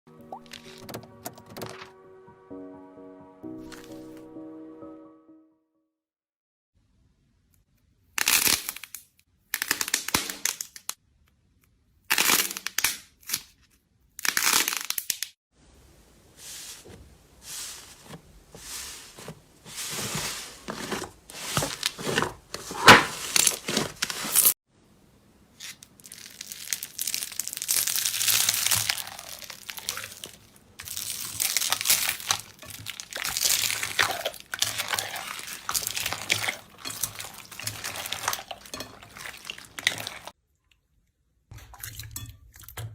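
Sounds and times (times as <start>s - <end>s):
slime crackling and crinkling: 16.4s - 24.6s, 25.6s - 40.4s.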